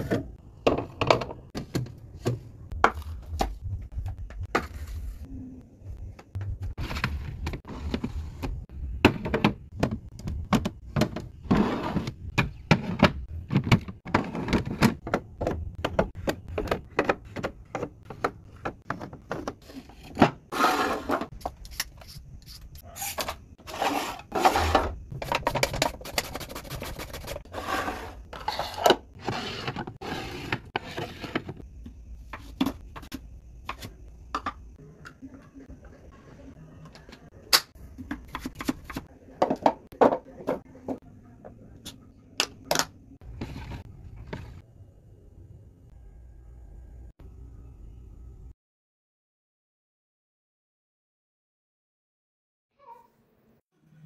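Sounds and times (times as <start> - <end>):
containers clicking and knocking: 25.1 - 27.4, 30.6 - 35.9.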